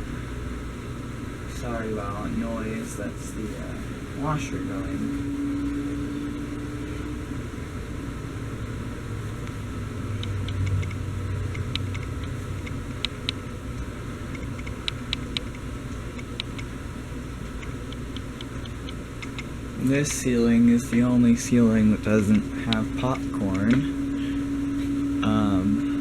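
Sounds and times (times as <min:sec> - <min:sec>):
washing machine running: 0:00.0 - 0:26.0
sharp light ticks: 0:10.2 - 0:16.7, 0:17.6 - 0:20.2, 0:22.3 - 0:23.8.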